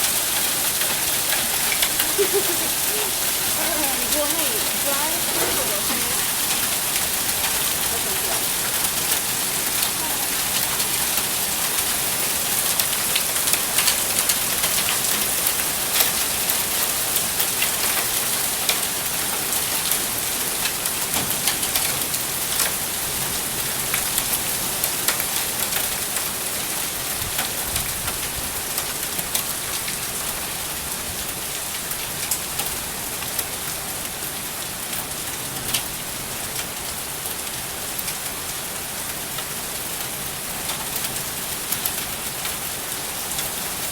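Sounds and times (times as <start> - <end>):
heavy rain hissing: 0.0 - 28.8.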